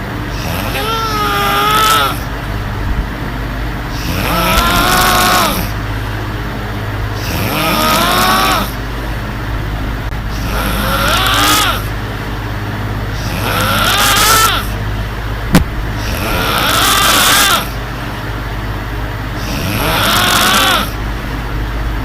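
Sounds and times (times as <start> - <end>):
electric fan humming: 0.0 - 22.0
woman snoring: 0.3 - 2.3, 3.9 - 5.8, 7.2 - 8.8, 10.3 - 11.9, 13.2 - 14.7, 16.0 - 17.8, 19.4 - 21.0.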